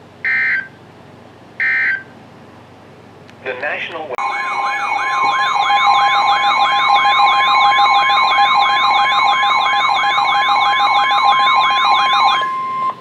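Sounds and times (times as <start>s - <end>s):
siren-like warble: 4.2s - 13.0s
steady high tone: 4.2s - 13.0s.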